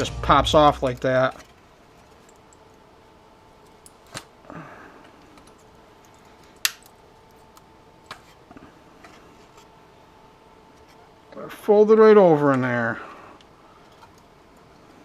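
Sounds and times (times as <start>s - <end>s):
plastic and metal parts snapping: 6.6s - 6.9s.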